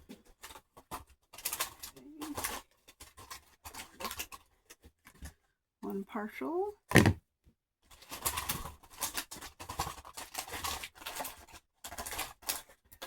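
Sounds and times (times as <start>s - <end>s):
plastic packs crackling and clicking: 0.1s - 5.2s, 7.9s - 13.0s.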